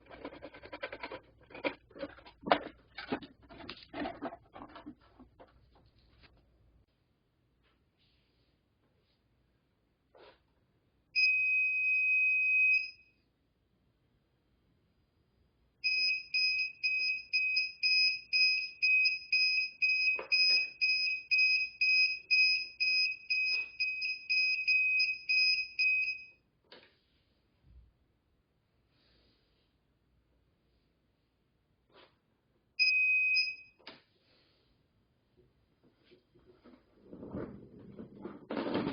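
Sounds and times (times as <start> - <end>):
buzzer beeping: 15.8 - 26.2.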